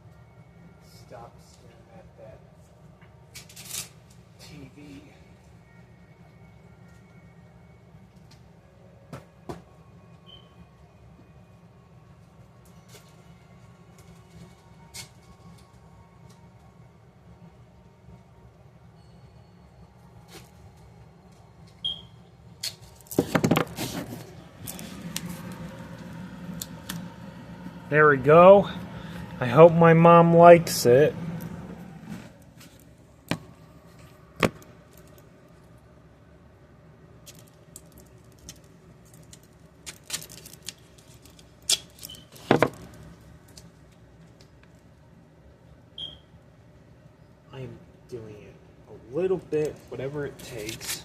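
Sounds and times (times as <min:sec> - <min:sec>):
low steady hum: 0:19.8 - 0:39.3.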